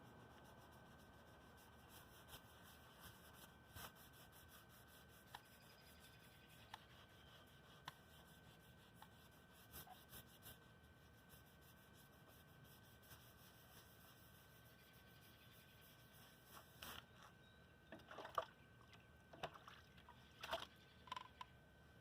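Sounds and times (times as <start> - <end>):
sandpaper scratching painted metal: 0.0 - 17.2.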